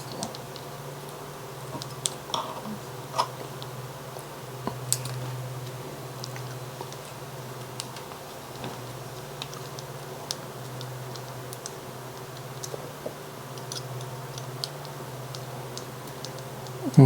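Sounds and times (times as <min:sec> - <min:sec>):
steady low hum: 0:16.8 - 0:17.0.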